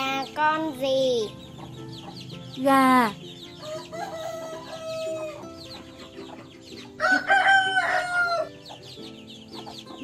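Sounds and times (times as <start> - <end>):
light background music: 0.0 - 10.0
rooster crowing: 3.6 - 5.4, 7.0 - 8.5.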